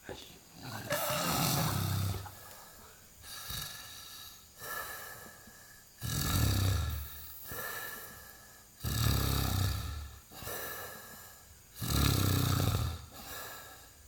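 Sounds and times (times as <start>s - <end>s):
soft breaths: 0.0s - 12.1s, 12.9s - 14.0s
low rumbling snoring: 0.6s - 2.5s, 3.2s - 5.2s, 6.0s - 10.7s, 11.7s - 13.2s.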